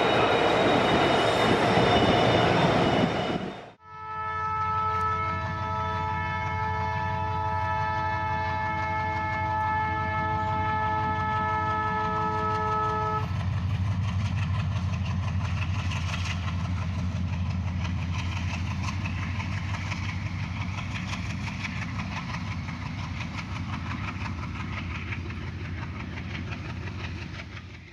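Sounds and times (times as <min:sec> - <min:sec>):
locomotive horn chord: 0:03.8 - 0:13.4
locomotive engine running: 0:04.9 - 0:27.9.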